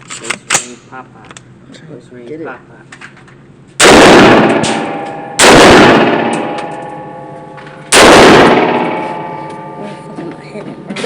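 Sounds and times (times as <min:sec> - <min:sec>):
gunshots with ringing decay: 0:03.8 - 0:09.8.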